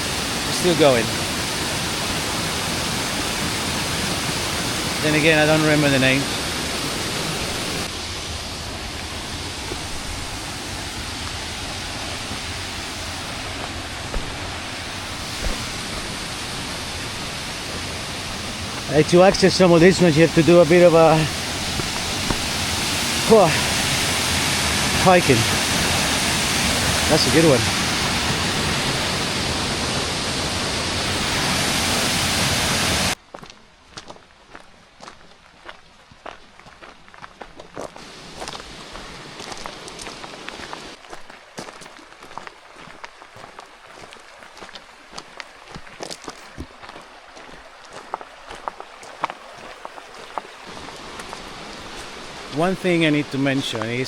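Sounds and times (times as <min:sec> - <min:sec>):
small waterfall rushing: 0:00.0 - 0:33.2, 0:38.0 - 0:54.0
quiet footsteps: 0:08.9 - 0:16.3, 0:21.3 - 0:23.1, 0:33.3 - 0:52.2
low thumps: 0:13.3 - 0:16.3.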